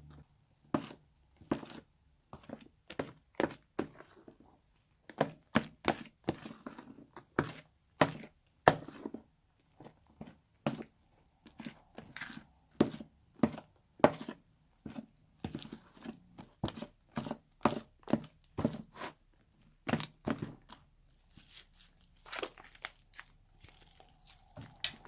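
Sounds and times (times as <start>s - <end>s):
slime squished by hand: 19.9s - 25.0s.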